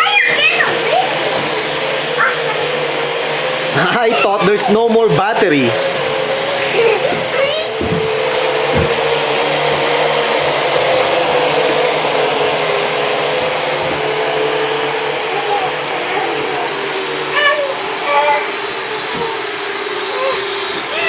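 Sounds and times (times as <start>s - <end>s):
quadcopter propellers whirring: 0.0s - 21.0s.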